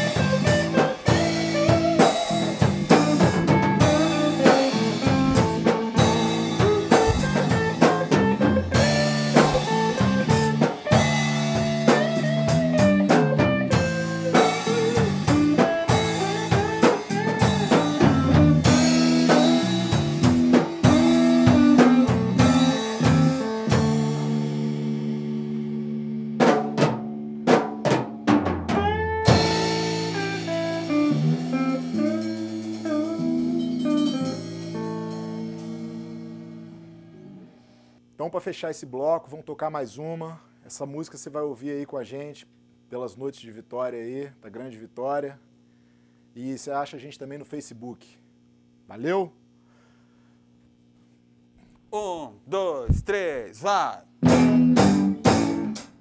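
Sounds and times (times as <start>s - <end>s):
drum kit hits and rimshots: 0.0s - 24.7s, 26.4s - 36.0s, 52.9s - 53.4s, 54.2s - 56.0s
rock band playing: 0.0s - 37.4s, 54.2s - 56.0s.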